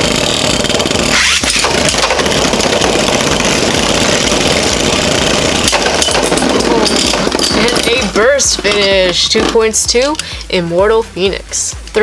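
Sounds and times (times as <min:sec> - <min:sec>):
spinning tops whirring and clashing: 0:00.0 - 0:12.0.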